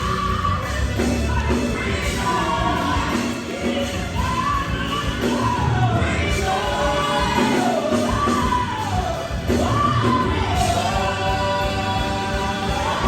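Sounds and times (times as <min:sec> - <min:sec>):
band with bass: 0:00.0 - 0:13.0.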